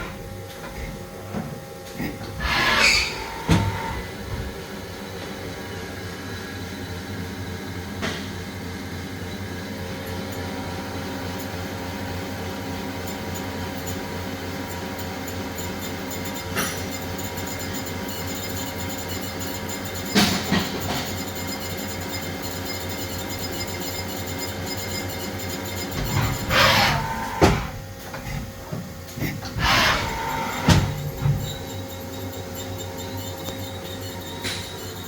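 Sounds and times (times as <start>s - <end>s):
lathe machine hum: 9.5s - 35.0s
sharp machine clanks: 29.4s - 35.0s.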